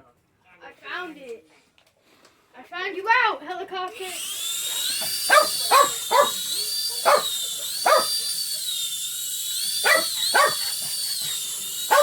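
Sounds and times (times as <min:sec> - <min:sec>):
toy helicopter motor whine: 0:03.9 - 0:12.0
dog barking: 0:05.3 - 0:08.1, 0:09.8 - 0:10.7.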